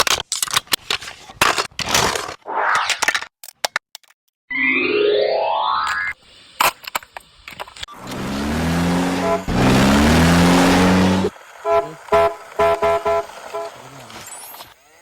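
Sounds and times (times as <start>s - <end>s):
car engine revving: 7.9s - 14.0s.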